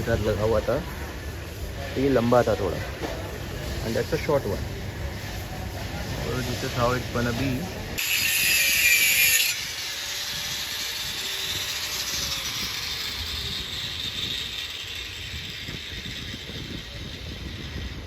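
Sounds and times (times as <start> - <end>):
power grinder on metal: 6.2 - 18.0
grinder disc spinning down: 8.0 - 18.0.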